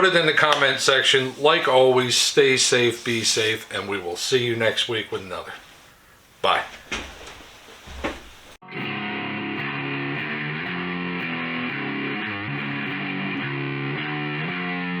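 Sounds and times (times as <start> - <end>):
distorted electric guitar music: 8.6 - 15.0.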